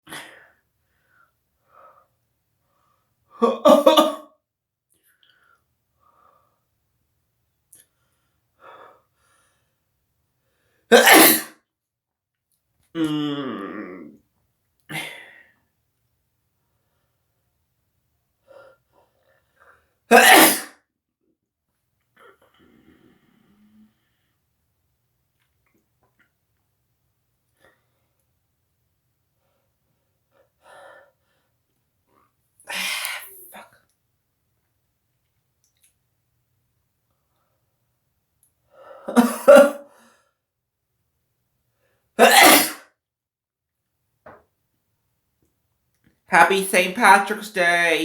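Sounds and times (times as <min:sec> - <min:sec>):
person sneezing: 0:10.9 - 0:11.6, 0:20.1 - 0:20.8, 0:39.1 - 0:39.9, 0:42.2 - 0:43.0
person sniffing: 0:32.7 - 0:33.5.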